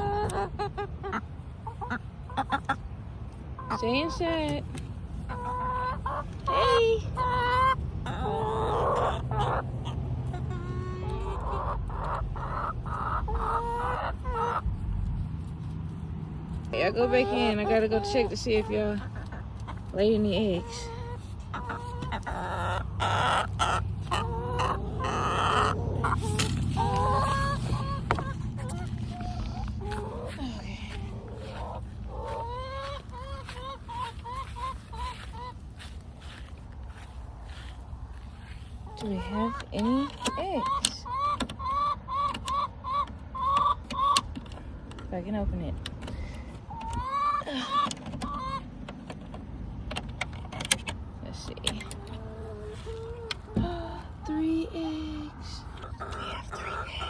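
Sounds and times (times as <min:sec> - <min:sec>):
hens clucking: 0:00.0 - 0:57.0
hen calling: 0:16.8 - 0:35.6, 0:51.7 - 0:57.0.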